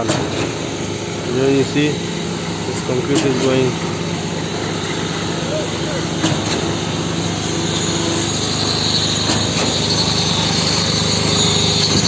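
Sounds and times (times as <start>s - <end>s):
high small-engine whine: 0.0s - 12.0s.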